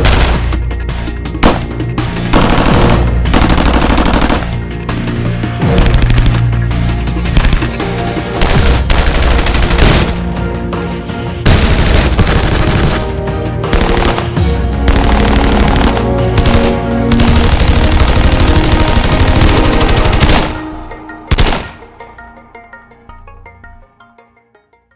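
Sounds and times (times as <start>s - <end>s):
background music: 0.0s - 24.9s
gunfire echo: 1.4s - 1.8s.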